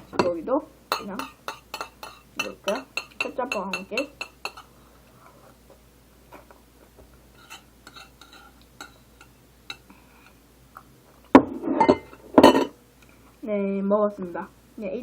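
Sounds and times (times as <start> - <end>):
spoon clinking against dish: 0.0 - 4.7, 7.4 - 10.4.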